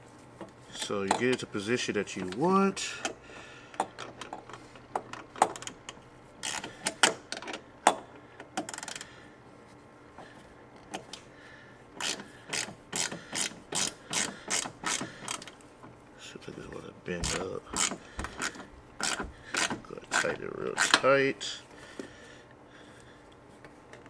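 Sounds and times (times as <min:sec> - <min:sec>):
socket ratchet wrench clicking: 0:05.0 - 0:09.1, 0:12.0 - 0:15.6, 0:17.2 - 0:21.1.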